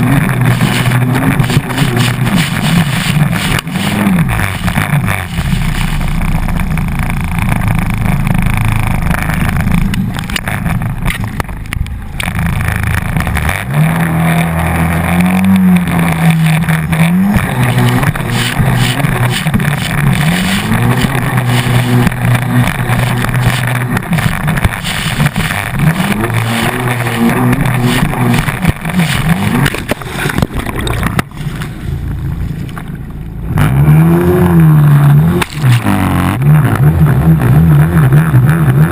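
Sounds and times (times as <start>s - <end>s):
jetski engine revving: 0.0s - 38.9s
wind and water rushing: 17.5s - 32.7s.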